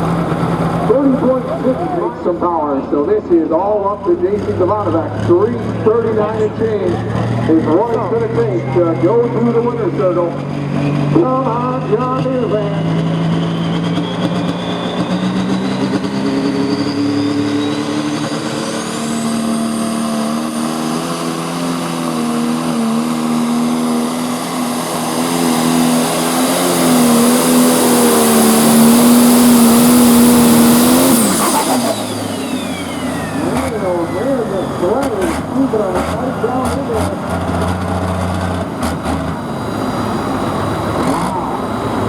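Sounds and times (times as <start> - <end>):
diesel engine at full throttle: 0.0 - 42.0
turbo whine: 10.4 - 39.5.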